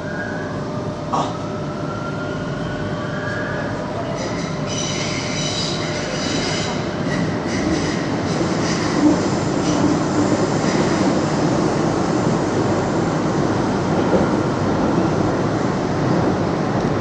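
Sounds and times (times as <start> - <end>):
metro train running on rails: 0.0 - 17.0
train wheels squealing: 1.8 - 8.0.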